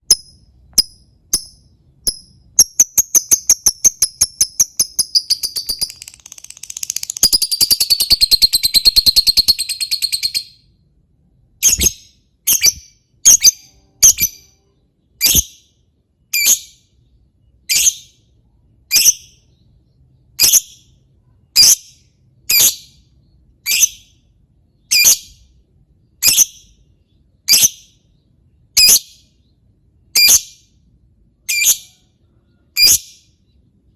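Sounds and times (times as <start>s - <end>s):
lovebird chirping and chattering: 0.0s - 10.6s, 11.6s - 14.6s, 15.2s - 15.7s, 16.3s - 16.8s, 17.6s - 18.2s, 18.9s - 19.6s, 20.4s - 20.9s, 21.5s - 23.0s, 23.6s - 24.2s, 24.8s - 25.5s, 26.2s - 29.3s, 30.2s - 30.6s, 31.5s - 33.6s.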